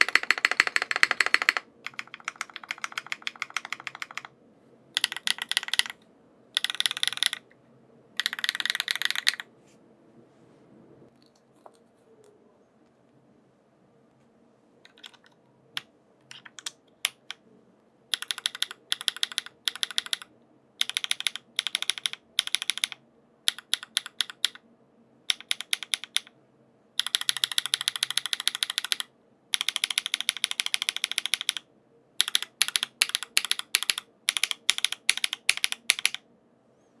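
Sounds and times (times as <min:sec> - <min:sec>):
mechanical keyboard typing: 0:00.0 - 0:04.3, 0:05.0 - 0:06.0, 0:06.6 - 0:07.4, 0:08.2 - 0:09.5, 0:14.9 - 0:17.4, 0:18.1 - 0:24.6, 0:25.3 - 0:26.3, 0:27.0 - 0:31.6, 0:32.2 - 0:36.2.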